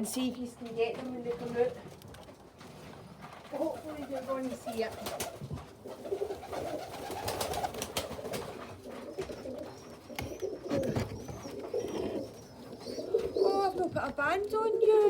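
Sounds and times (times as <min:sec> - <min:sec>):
pigeons cooing: 0:03.5 - 0:15.0.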